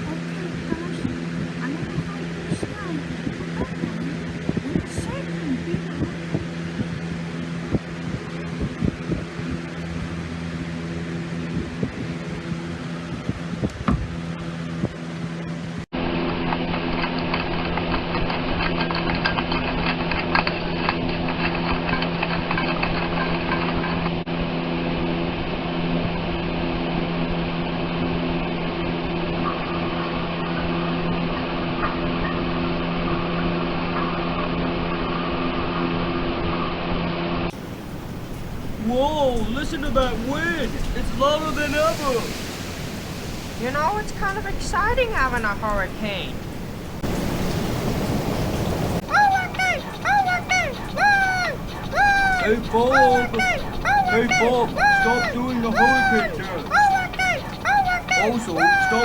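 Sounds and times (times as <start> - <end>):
electric fan whirring: 37.5 - 59.0.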